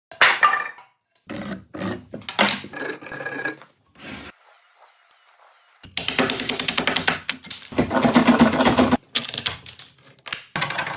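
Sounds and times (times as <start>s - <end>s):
tool rasping on wood: 1.3s - 5.9s.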